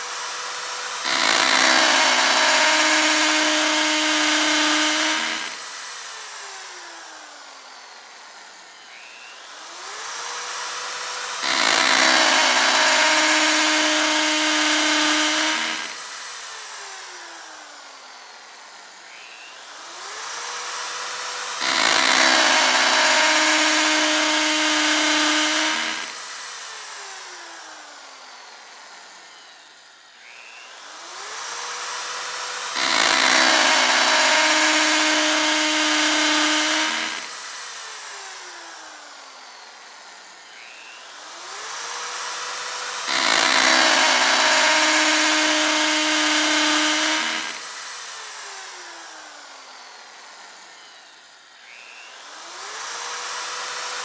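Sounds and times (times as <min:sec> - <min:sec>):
power drill whining and drilling: 0:00.0 - 0:54.0.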